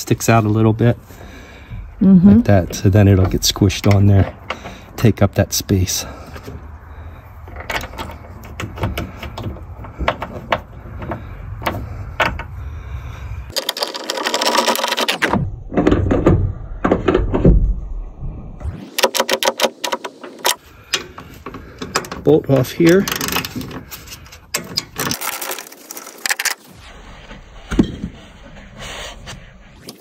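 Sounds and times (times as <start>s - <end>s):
hand tools clicking and knocking: 7.4s - 12.5s, 18.9s - 26.6s
rustling noise: 25.1s - 30.0s.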